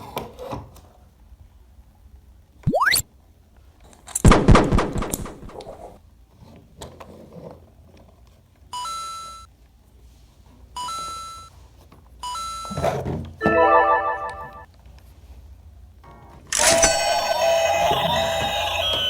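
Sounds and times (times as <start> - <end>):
loud clattering crash: 4.2 - 5.9
short electronic chime tones: 13.4 - 14.6.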